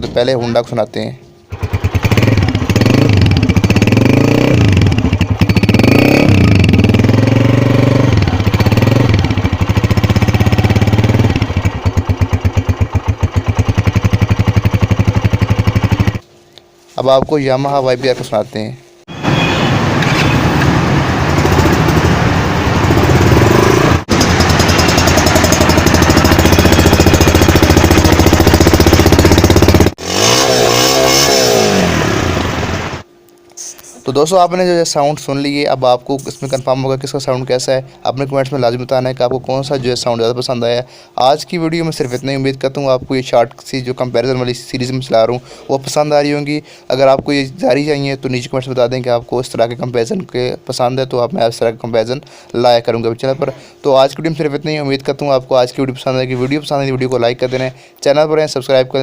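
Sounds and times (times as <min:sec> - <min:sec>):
motorcycle engine revving and idling: 0:01.5 - 0:16.2, 0:20.3 - 0:33.1.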